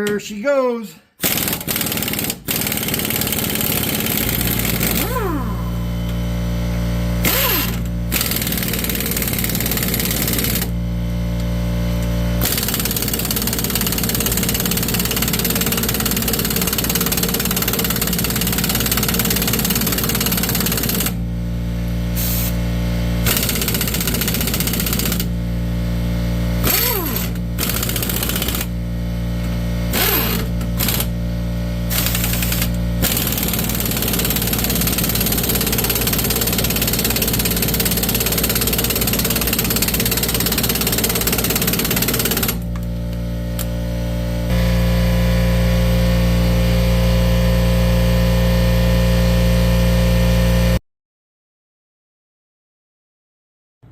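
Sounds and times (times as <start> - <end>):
air compressor motor running: 1.1 - 50.8
impact wrench bursts: 1.2 - 5.8, 7.2 - 10.7, 12.4 - 21.2, 22.2 - 22.6, 23.2 - 25.3, 26.6 - 28.8, 29.9 - 31.2, 31.9 - 42.8.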